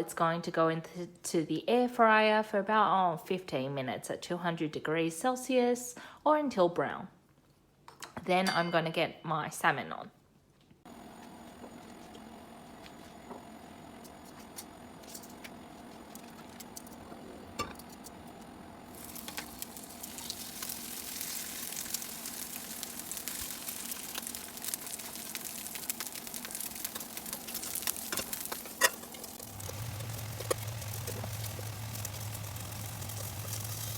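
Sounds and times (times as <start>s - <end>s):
steady hum: 10.9s - 33.9s
fish sizzling in a pan: 17.6s - 33.9s.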